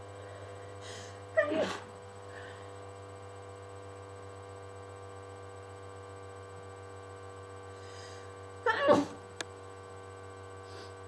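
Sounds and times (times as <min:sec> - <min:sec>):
low electrical hum: 0:00.0 - 0:11.0
person sneezing: 0:00.9 - 0:01.9, 0:08.7 - 0:09.2.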